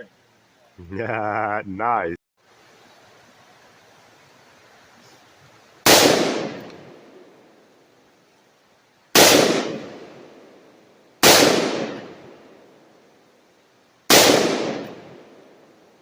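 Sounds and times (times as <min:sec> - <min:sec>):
gunshots with echo: 0:05.9 - 0:06.7, 0:09.2 - 0:10.2, 0:11.2 - 0:12.3, 0:14.1 - 0:15.3.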